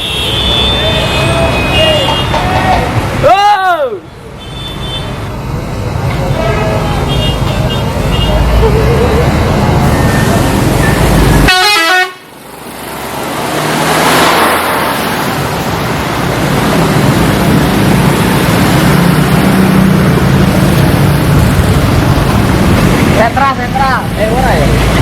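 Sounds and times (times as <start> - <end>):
multi-tone bus horn: 0.0 - 2.4, 6.3 - 8.4, 11.4 - 12.3
street noise: 0.0 - 25.0
bus engine: 5.1 - 25.0.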